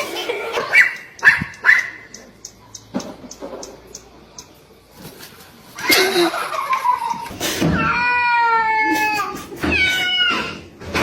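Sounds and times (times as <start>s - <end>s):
cat yowling: 7.7s - 10.6s.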